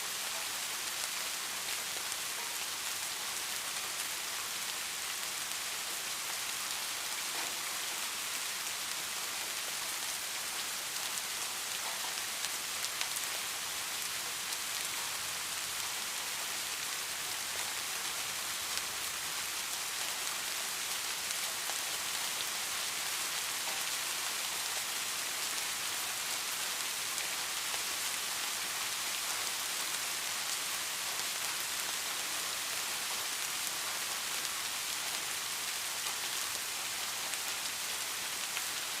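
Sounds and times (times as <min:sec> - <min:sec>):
steady rain hiss: 0:00.0 - 0:39.0.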